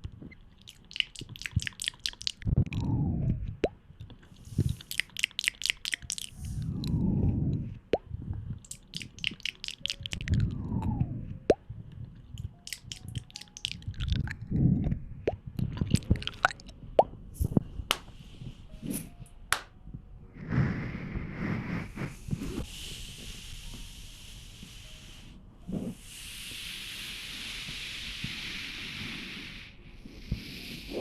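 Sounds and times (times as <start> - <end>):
wet clicks and plops: 0.6 - 2.9, 3.5 - 7.0, 8.6 - 11.6, 12.4 - 14.6, 15.3 - 16.8
steady hiss: 20.8 - 31.0.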